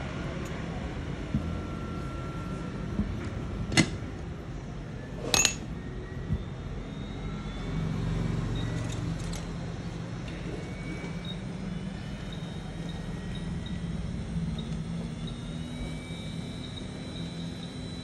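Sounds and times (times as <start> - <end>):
low background hum: 0.0 - 18.0
small tools clinking: 5.3 - 5.6.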